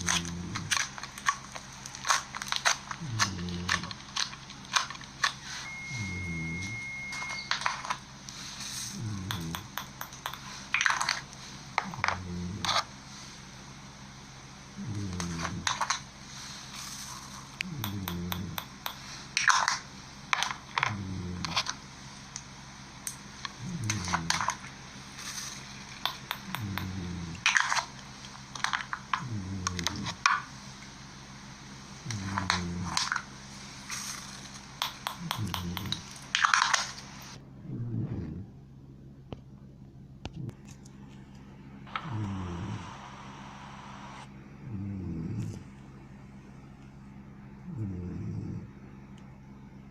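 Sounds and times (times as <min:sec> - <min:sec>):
short low hum: 0:05.4 - 0:07.7, 0:23.5 - 0:27.5, 0:37.3 - 0:49.9.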